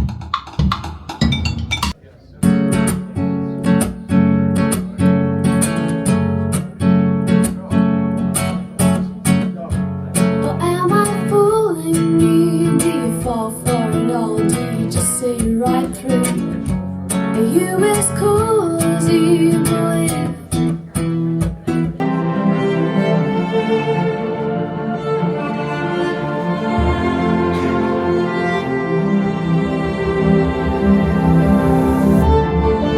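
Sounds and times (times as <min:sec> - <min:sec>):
strummed acoustic guitar: 0:02.4 - 0:22.4, 0:26.1 - 0:29.0
gliding melody line: 0:22.0 - 0:32.9.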